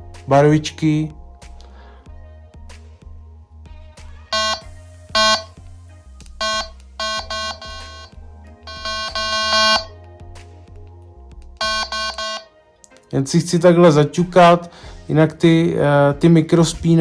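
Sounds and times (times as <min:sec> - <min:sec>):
background music: 0:00.0 - 0:17.0
bite alarm beeping: 0:04.4 - 0:05.5, 0:06.4 - 0:08.1, 0:08.7 - 0:09.9, 0:11.6 - 0:12.4.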